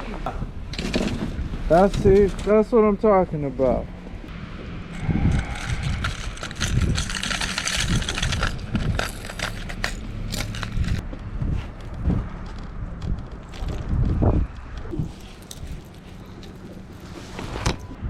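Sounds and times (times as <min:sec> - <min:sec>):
wind buffeting microphone: 0:03.9 - 0:18.0
fishing gear clicking and rattling: 0:04.9 - 0:11.0, 0:11.8 - 0:17.2.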